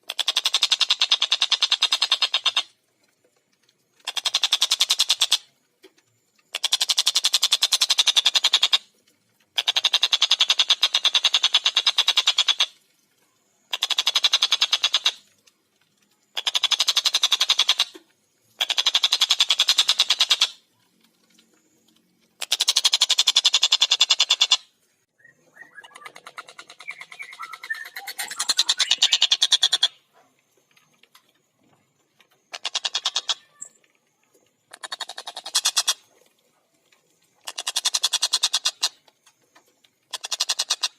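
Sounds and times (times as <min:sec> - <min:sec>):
kingfisher rattling cackle: 0:16.4 - 0:17.9, 0:22.4 - 0:24.6, 0:25.6 - 0:30.0, 0:32.5 - 0:33.7, 0:34.7 - 0:36.0, 0:37.4 - 0:39.0, 0:40.1 - 0:40.9
kingfisher cackling calls: 0:25.5 - 0:30.0, 0:32.5 - 0:33.7.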